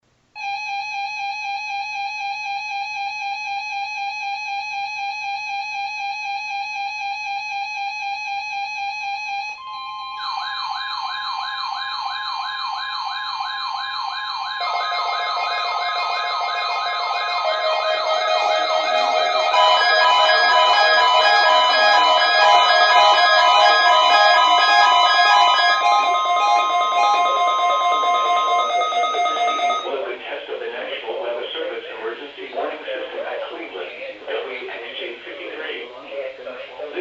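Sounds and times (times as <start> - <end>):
steady alarm tone: 0.4 - 34.4
warbling siren-like alarms: 1.4 - 30.0.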